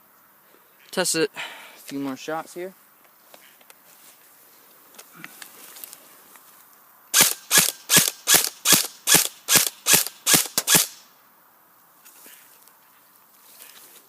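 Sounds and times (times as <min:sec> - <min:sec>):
airsoft rifle shots: 0:07.1 - 0:11.0.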